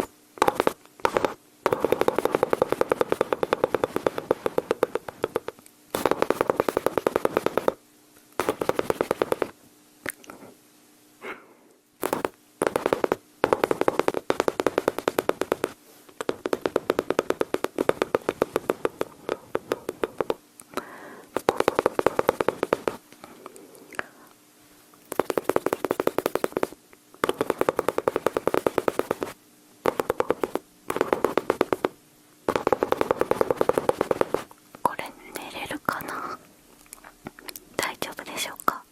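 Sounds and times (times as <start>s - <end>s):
mouth imitating gunfire: 12.0s - 14.2s.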